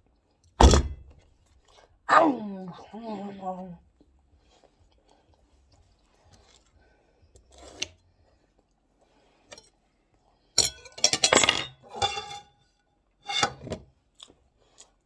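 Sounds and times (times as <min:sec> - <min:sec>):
faint handling sounds: 0:04.0 - 0:10.6
tableware clattering: 0:10.6 - 0:12.5, 0:13.3 - 0:13.6.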